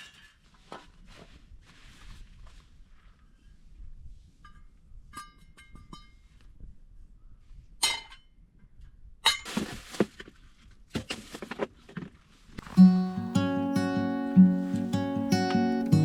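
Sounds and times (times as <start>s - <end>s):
rustling handling noises: 9.5s - 16.0s.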